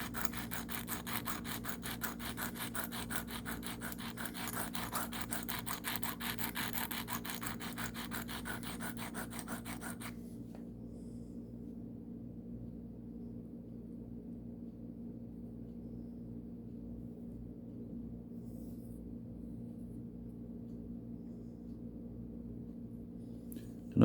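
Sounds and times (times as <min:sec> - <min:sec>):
knife scraping on sharpening stone: 0:00.0 - 0:10.1.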